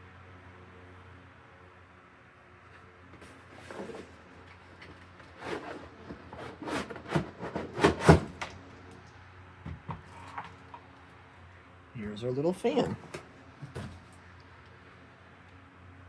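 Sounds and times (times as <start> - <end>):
cardboard box rustling and knocking: 5.5 - 8.4.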